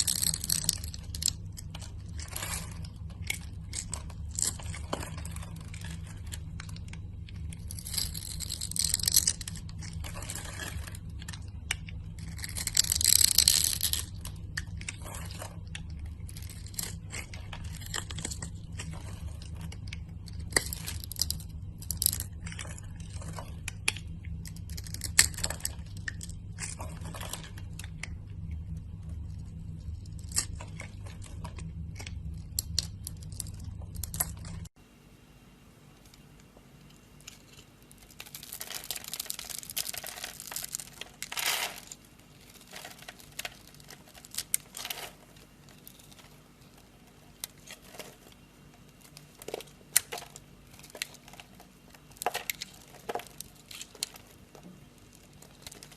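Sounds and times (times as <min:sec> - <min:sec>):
steady low hum: 0:00.0 - 0:55.9.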